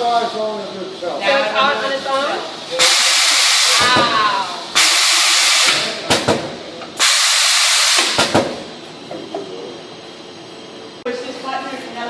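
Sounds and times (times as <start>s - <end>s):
machine hissing bursts: 2.8s - 4.1s, 4.7s - 6.3s, 7.0s - 8.4s.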